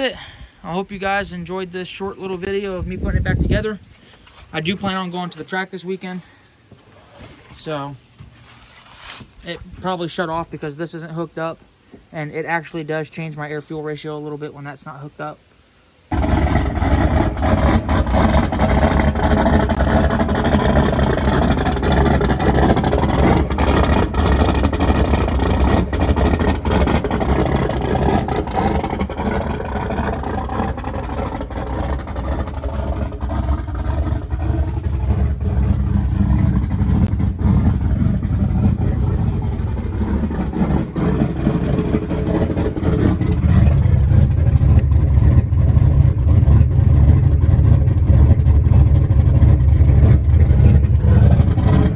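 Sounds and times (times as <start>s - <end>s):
car engine idling: 16.1s - 51.9s
exhaust leak ticking: 16.1s - 51.9s.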